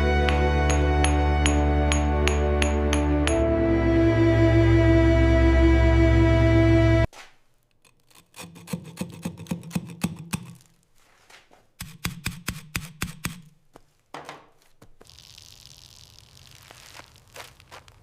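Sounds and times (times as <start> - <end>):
background music: 0.0 - 7.1
hand tool scraping wood: 7.1 - 13.5.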